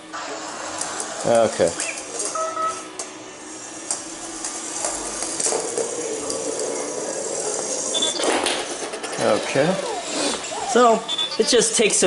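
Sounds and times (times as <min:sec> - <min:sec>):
toy motor whirring: 0:04.6 - 0:12.0.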